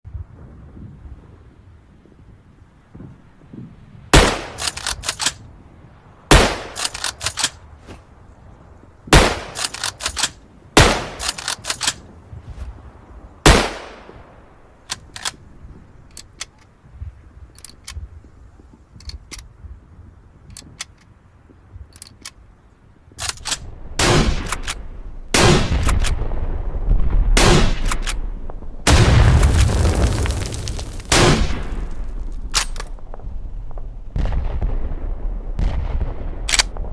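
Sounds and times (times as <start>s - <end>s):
rifle shots: 4.1s - 5.4s, 6.3s - 7.6s, 9.1s - 12.0s, 13.4s - 14.1s, 23.2s - 26.2s, 27.4s - 28.2s, 31.1s - 32.9s
rifle bolt clicks: 4.6s - 5.4s, 6.7s - 7.6s, 9.5s - 10.4s, 11.2s - 12.0s, 14.9s - 15.4s, 23.2s - 23.7s, 24.4s - 24.8s, 25.8s - 26.2s, 27.8s - 28.2s, 32.5s - 32.9s, 36.5s - 36.7s.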